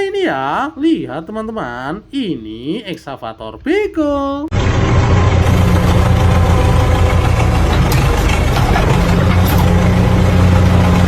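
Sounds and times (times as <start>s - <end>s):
large engine idling: 4.5s - 11.0s.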